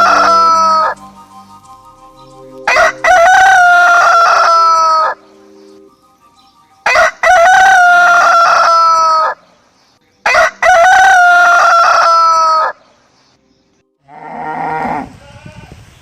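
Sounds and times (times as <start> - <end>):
rooster crowing: 2.7 - 5.2, 6.9 - 9.4, 10.3 - 12.8.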